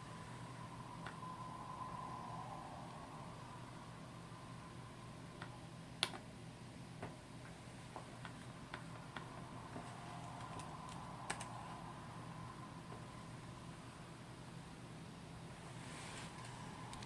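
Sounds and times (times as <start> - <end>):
low electrical hum: 0.0 - 17.0
sharp irregular clicks: 10.2 - 11.8.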